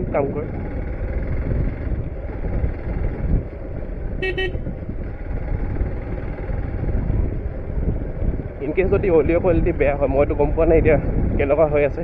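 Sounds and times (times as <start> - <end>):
motorcycle engine rumble: 0.0 - 12.0
wind on microphone: 0.0 - 12.0
vehicle horn toot: 4.2 - 4.7.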